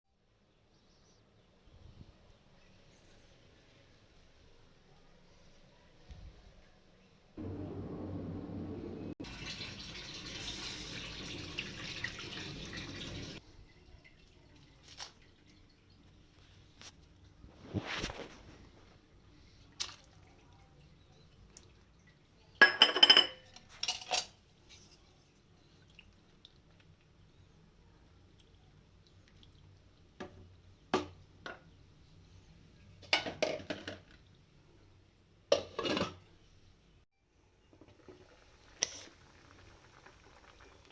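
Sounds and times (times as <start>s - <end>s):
water drip: 9.2s - 13.4s, 14.0s - 16.4s, 19.7s - 22.3s, 25.6s - 27.4s, 28.3s - 30.2s
water running from a tap: 9.2s - 13.4s
utensils clattering against dishes: 22.6s - 25.0s.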